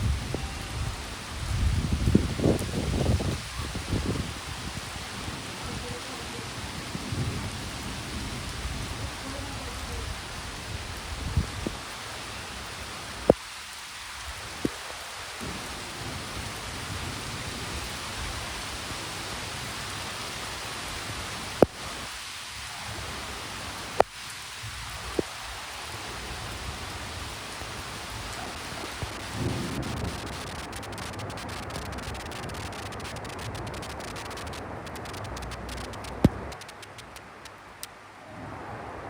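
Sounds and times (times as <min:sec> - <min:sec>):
low thunder rumbles: 0:00.0 - 0:06.0, 0:06.6 - 0:11.8, 0:15.4 - 0:18.6, 0:26.0 - 0:37.0
steady rain falling: 0:00.0 - 0:39.0
sharp clicks: 0:29.9 - 0:37.9.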